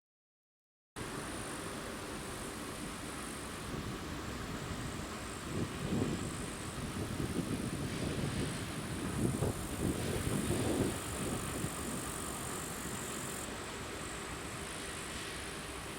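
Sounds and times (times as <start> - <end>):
freight train rumble: 1.0 - 15.9.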